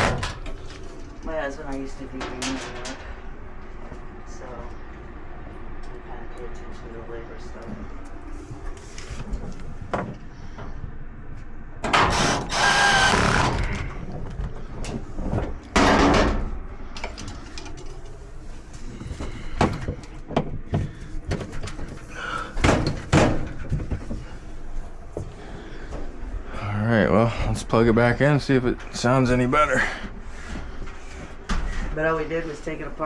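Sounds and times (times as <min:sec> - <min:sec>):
clicks and knocks of parts: 0:00.0 - 0:03.2, 0:11.8 - 0:18.2
metal panels scraping: 0:00.0 - 0:03.4, 0:11.9 - 0:14.2.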